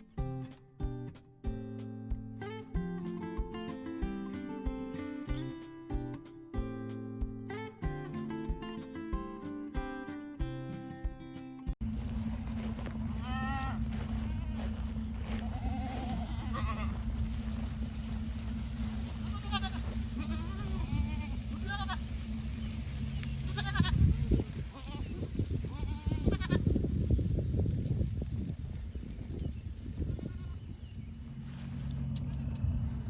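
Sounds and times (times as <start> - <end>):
steady low hum: 11.8 - 25.9, 28.4 - 33.0
goats bleating: 12.6 - 17.9, 18.8 - 22.4, 23.0 - 26.6, 30.0 - 30.7.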